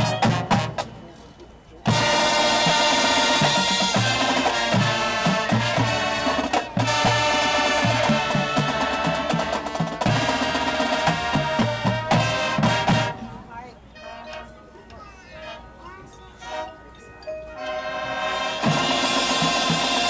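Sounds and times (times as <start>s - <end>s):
drumline drum hits: 0.0s - 1.0s, 1.9s - 13.5s, 18.3s - 20.0s
marching band brass chords: 0.0s - 1.1s, 1.8s - 16.9s, 17.5s - 20.0s.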